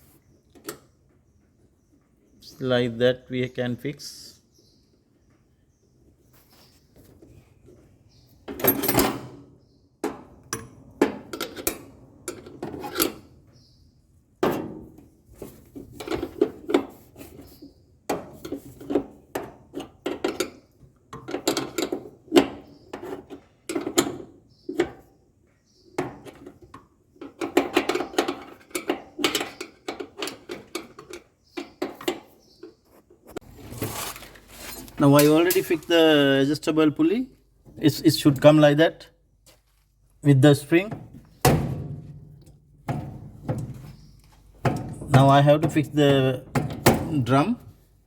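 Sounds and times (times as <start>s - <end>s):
metal tools clinking and scraping: 33.7s - 36.2s.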